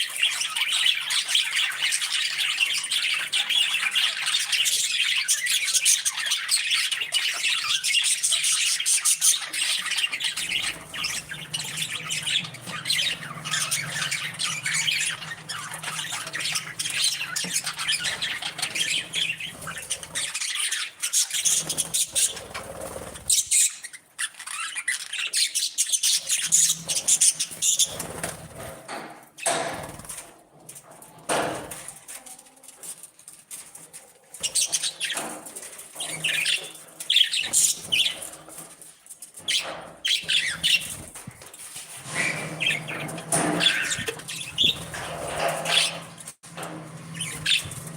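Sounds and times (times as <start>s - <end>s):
bird squawks: 0.0s - 28.3s, 42.0s - 46.2s
budgerigars chattering: 0.0s - 28.4s, 36.0s - 38.4s, 39.5s - 41.2s, 42.1s - 46.2s, 47.1s - 47.9s.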